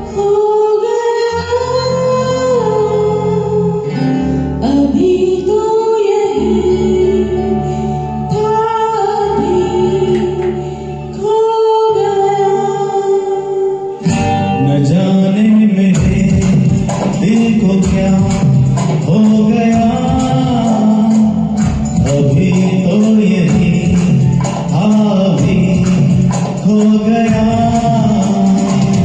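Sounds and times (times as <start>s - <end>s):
percussion: 14.0s - 29.0s
bass line: 14.1s - 29.0s.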